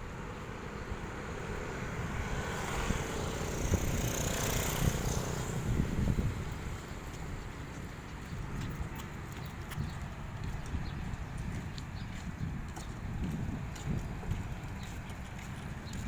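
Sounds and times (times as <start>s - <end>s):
engine passing by: 0.0s - 16.0s.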